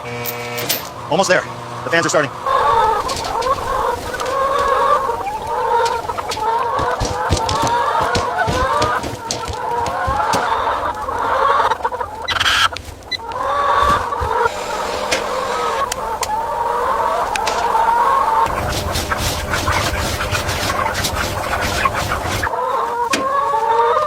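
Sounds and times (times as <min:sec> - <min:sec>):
chickens clucking: 0:00.7 - 0:24.0
low thumps: 0:12.8 - 0:22.5.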